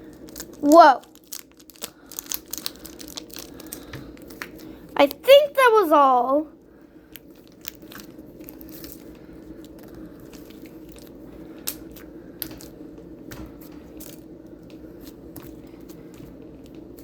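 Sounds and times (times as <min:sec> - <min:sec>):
slime squishing: 0:00.0 - 0:05.8, 0:07.0 - 0:12.8
low background hum: 0:00.0 - 0:17.0.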